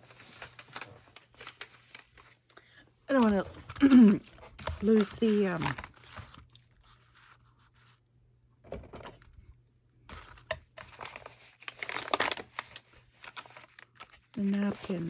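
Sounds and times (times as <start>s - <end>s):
paper rustling and crinkling: 0.0s - 2.5s, 3.1s - 8.0s, 10.1s - 15.0s.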